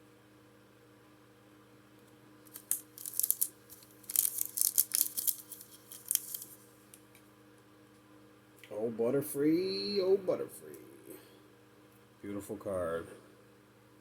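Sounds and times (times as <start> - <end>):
trading cards rustling and clicking: 2.5 - 6.6.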